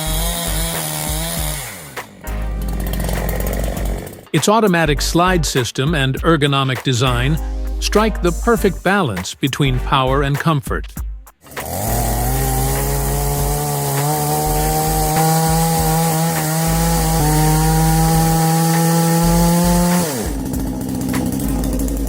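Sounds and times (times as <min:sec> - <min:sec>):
chainsaw cutting wood: 0:00.0 - 0:04.4, 0:11.4 - 0:22.0.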